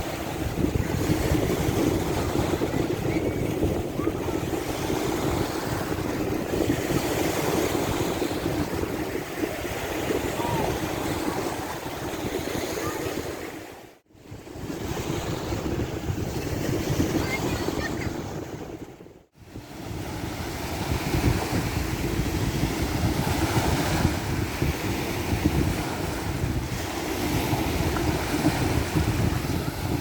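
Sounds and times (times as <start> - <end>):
waves washing onto beach: 0.0 - 30.0
wind buffeting microphone: 0.0 - 30.0.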